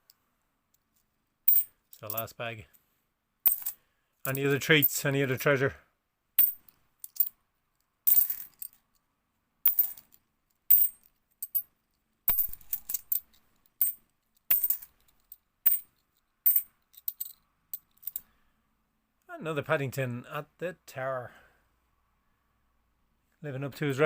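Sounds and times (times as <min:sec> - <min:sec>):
coins clinking: 0:01.5 - 0:02.2, 0:03.5 - 0:04.4, 0:06.4 - 0:07.3, 0:08.1 - 0:08.8, 0:09.7 - 0:10.1, 0:10.7 - 0:11.6, 0:12.3 - 0:15.9, 0:16.5 - 0:18.2.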